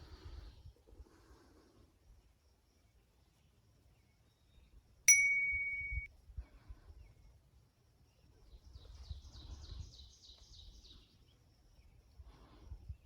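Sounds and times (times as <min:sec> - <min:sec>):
chime-like ding: 0:05.1 - 0:06.1.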